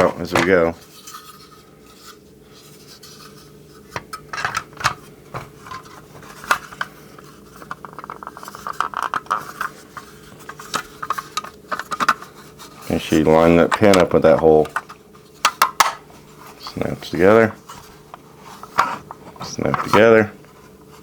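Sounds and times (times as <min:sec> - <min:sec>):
plastic toy parts clicking: 0:07.7 - 0:09.7.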